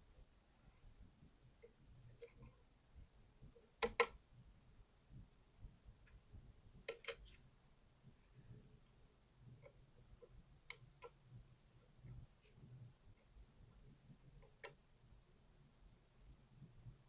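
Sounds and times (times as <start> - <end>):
lock pick clicking and scraping: 6.9 - 7.4.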